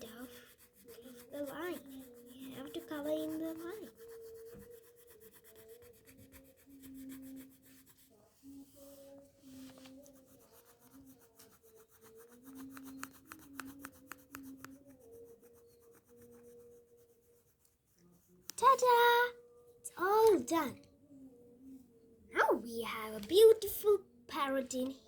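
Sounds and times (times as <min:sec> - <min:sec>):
pencil scratching on paper: 0:00.0 - 0:19.4.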